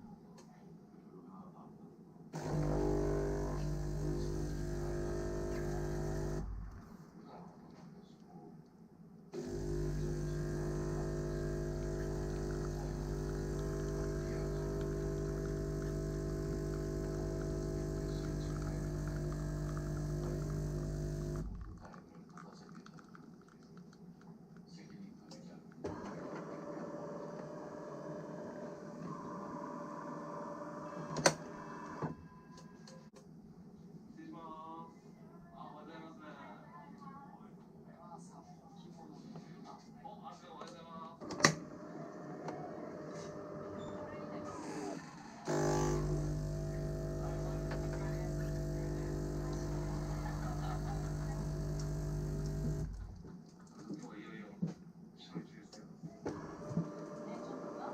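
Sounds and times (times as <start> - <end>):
machine humming: 2.4 - 6.6, 9.4 - 21.8, 42.9 - 53.2.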